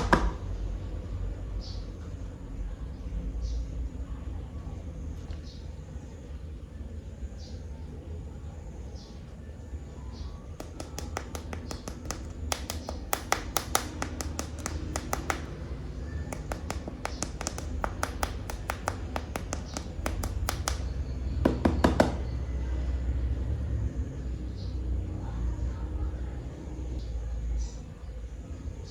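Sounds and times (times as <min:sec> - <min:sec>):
plastic toys clicking: 0:10.6 - 0:15.6, 0:16.3 - 0:20.9.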